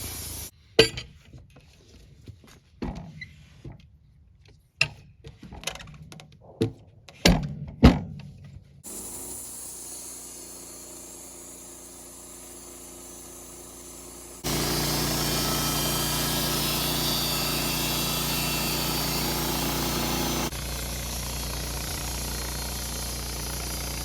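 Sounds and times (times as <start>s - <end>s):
sawmill engine running: 8.8s - 24.0s.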